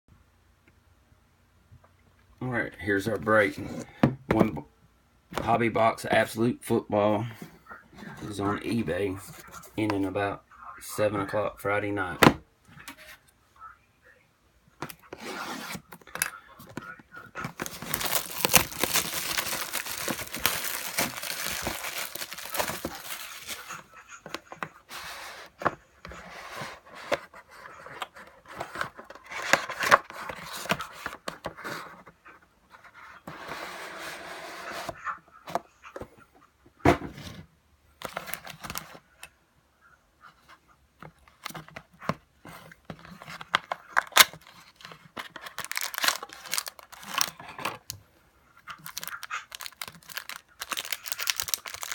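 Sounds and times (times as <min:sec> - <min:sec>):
plastic wrapping tearing and crinkling: 0:17.4 - 0:23.9, 0:43.9 - 0:47.4, 0:48.7 - 0:51.9.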